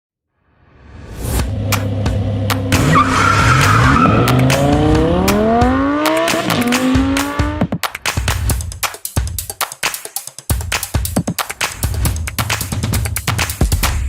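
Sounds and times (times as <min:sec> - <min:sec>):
sharp hits: 0:01.1 - 0:07.7
car engine revving: 0:01.3 - 0:07.7
tire squeal: 0:02.7 - 0:05.2.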